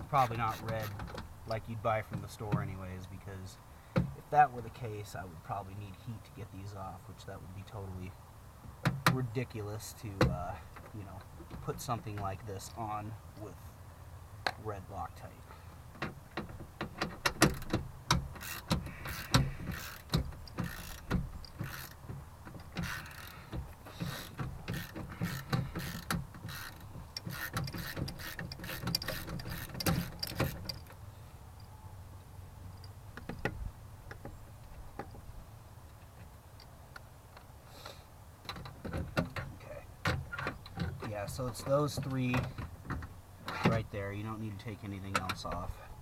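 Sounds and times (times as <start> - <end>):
ratchet wrench clicking: 18.3 - 22.0, 22.6 - 23.4, 24.0 - 30.9.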